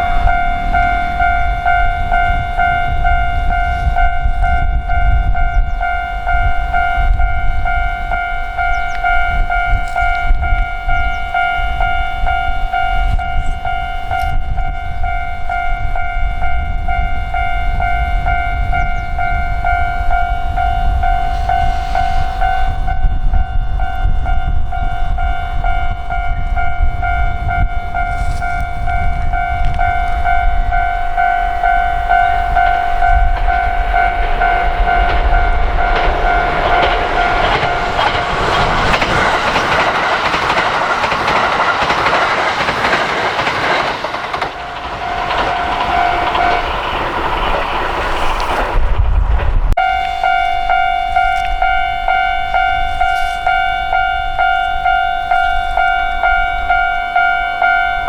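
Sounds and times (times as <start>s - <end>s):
train rumble and wheel clatter: 0.0s - 58.0s
level crossing bell ringing: 22.4s - 39.0s, 49.8s - 58.0s.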